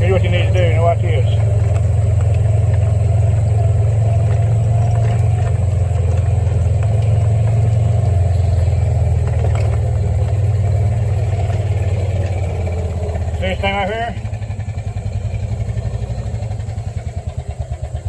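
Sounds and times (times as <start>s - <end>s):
faint clicks: 0.0s - 13.5s.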